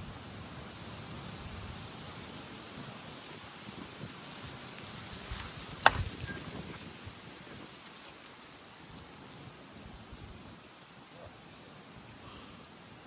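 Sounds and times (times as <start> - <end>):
wind noise on microphone: 0.0 - 7.9
bat striking softball: 5.8 - 6.2.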